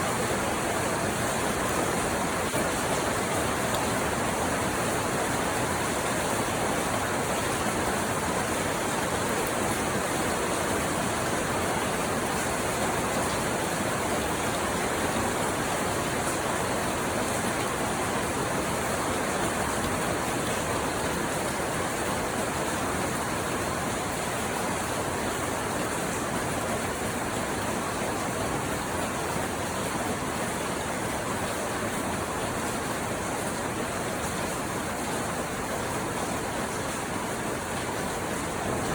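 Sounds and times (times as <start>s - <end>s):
steady rain: 0.0s - 38.9s.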